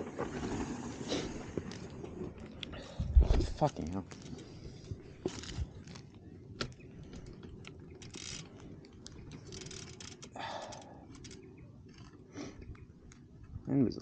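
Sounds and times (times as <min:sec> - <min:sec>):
bike chain clicking and rattling: 0:00.0 - 0:02.8, 0:03.6 - 0:12.3.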